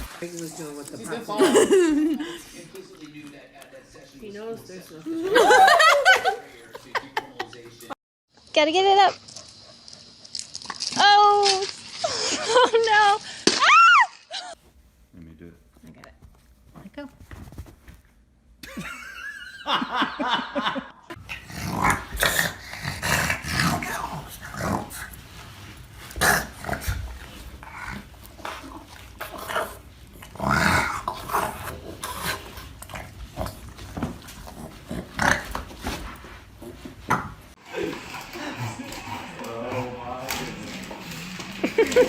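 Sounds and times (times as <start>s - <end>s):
dog growling: 21.2s - 25.2s, 26.1s - 36.0s, 37.7s - 42.0s.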